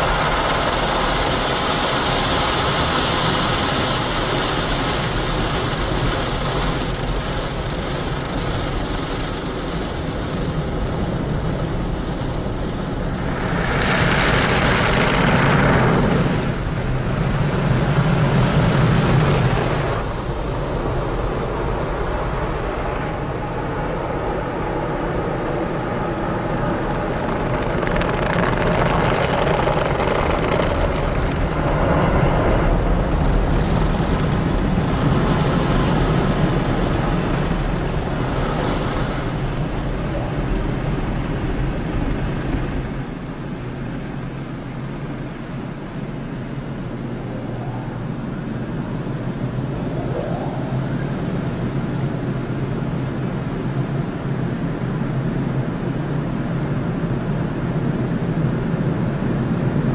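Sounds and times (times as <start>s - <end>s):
car wash spraying water: 0.0s - 40.2s
car wash machinery: 0.0s - 59.9s.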